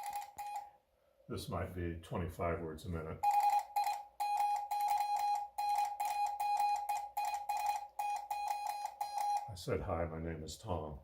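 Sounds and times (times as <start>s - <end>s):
morse code beeps: 0.0s - 0.7s, 3.2s - 9.5s.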